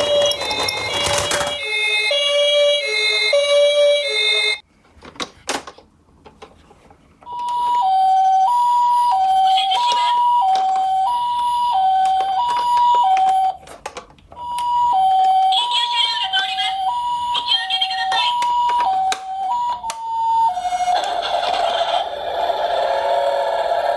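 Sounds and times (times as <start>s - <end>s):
toy electronic two-tone siren: 0.0s - 4.6s, 7.3s - 13.6s, 14.4s - 21.0s.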